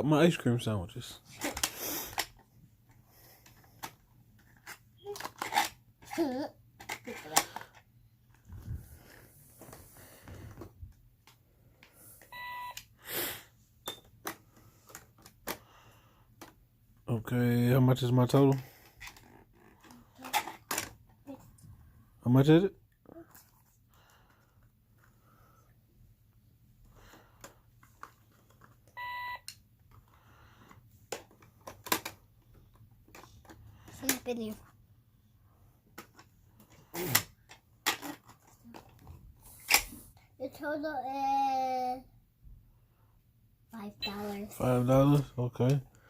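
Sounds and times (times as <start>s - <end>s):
toy cash register beeping: 12.3s - 12.8s, 29.0s - 29.5s.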